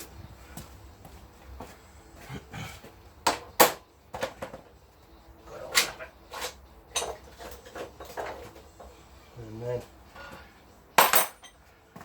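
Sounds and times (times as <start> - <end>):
hand tools clinking and knocking: 5.5 - 9.0, 10.2 - 12.0.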